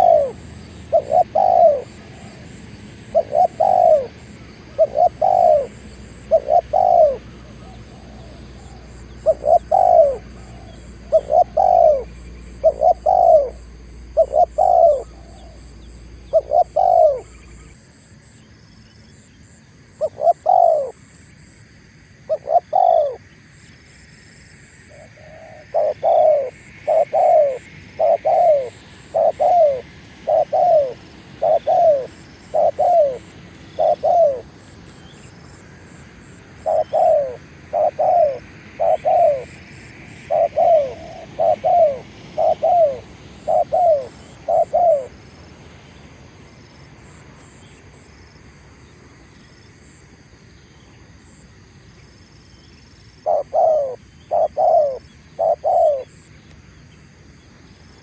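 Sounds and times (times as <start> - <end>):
dove cooing: 0.0 - 17.8, 20.0 - 21.1, 22.3 - 23.3, 24.8 - 46.5, 53.2 - 56.2.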